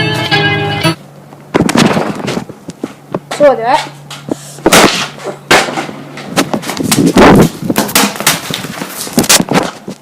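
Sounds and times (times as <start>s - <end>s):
loud bangs and clatters: 4.7s - 9.8s.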